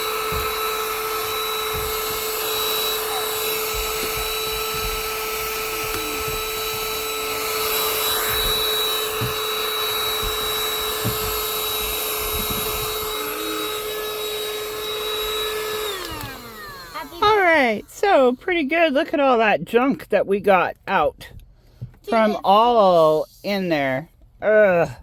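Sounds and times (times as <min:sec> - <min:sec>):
nozzle knocking: 0:00.0 - 0:16.8
car vacuum motor whine: 0:00.0 - 0:18.4.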